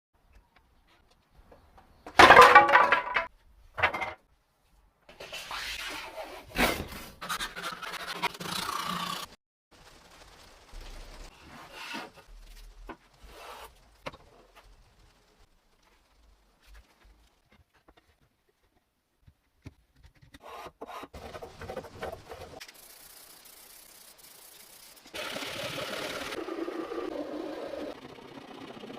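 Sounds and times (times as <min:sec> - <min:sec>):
hand tools scraping wood: 0:11.4 - 0:12.3.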